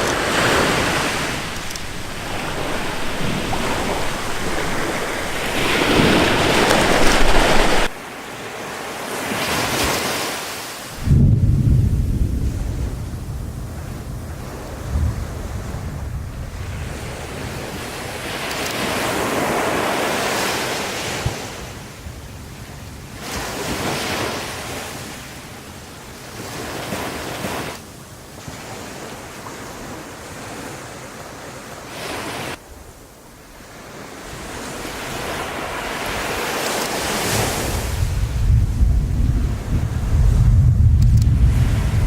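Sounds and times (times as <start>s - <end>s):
deep rumble: 0.0s - 8.0s
wind buffeting microphone: 0.0s - 8.2s, 10.9s - 19.6s, 34.3s - 42.0s
sea waves rushing: 0.0s - 12.4s, 14.4s - 21.8s, 33.4s - 42.0s.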